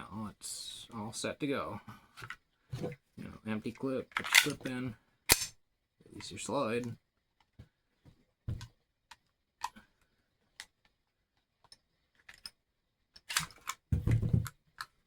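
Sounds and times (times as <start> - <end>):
pistol parts clacking: 4.1 - 4.7, 5.3 - 5.6, 11.6 - 15.0.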